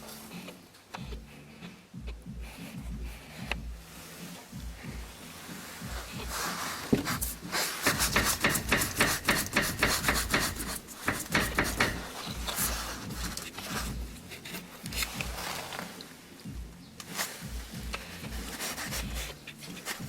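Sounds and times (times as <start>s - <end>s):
light hollow knocks with rubbing: 4.5s - 20.0s.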